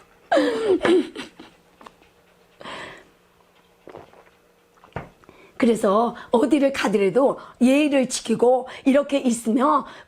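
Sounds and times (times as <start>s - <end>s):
faint steady hum: 0.0s - 10.0s
woman's voice: 5.6s - 10.0s.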